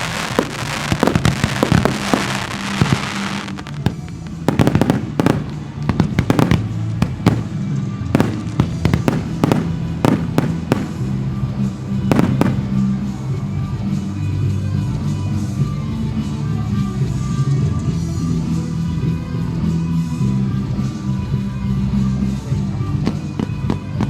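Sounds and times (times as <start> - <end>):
fireworks bangs: 0.0 - 13.4, 23.0 - 24.0
music playing: 0.0 - 24.0.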